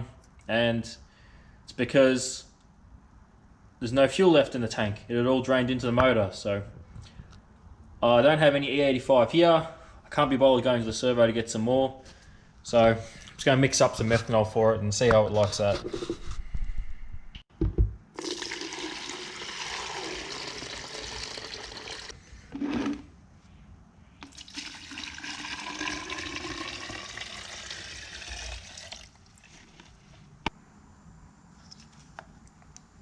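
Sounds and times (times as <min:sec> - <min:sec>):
liquid fuel pouring: 0:18.2 - 0:23.0, 0:24.2 - 0:30.0.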